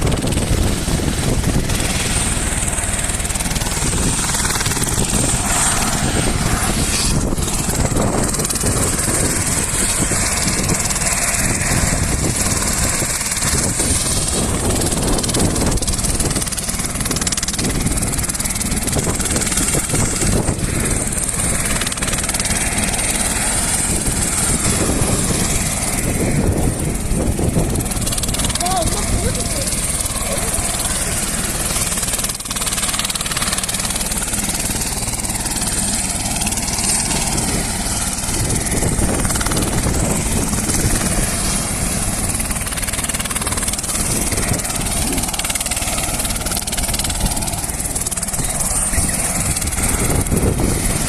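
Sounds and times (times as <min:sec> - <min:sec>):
helicopter rotor and engine: 0:00.0 - 0:51.0.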